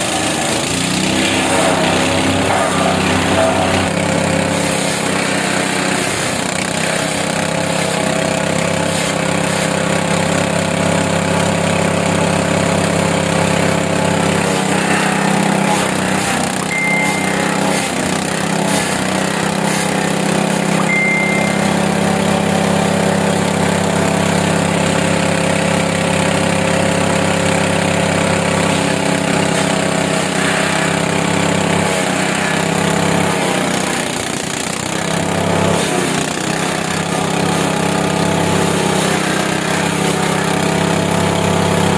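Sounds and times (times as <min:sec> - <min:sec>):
gasoline engine running: 0:00.0 - 0:28.8.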